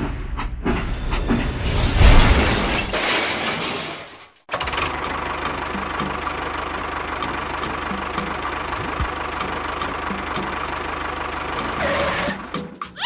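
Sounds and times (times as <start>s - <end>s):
engine humming: 4.5s - 13.0s.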